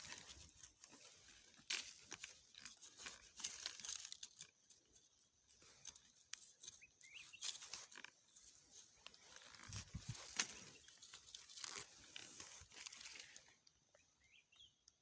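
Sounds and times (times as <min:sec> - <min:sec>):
plant stems snapping: 0:09.5 - 0:13.3.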